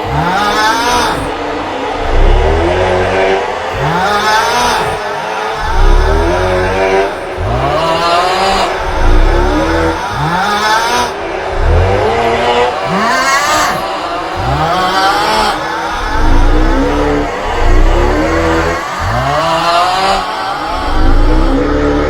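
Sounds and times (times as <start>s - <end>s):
heavy low rumble: 1.8s - 22.0s
man groaning snore: 3.7s - 12.2s, 12.8s - 22.0s.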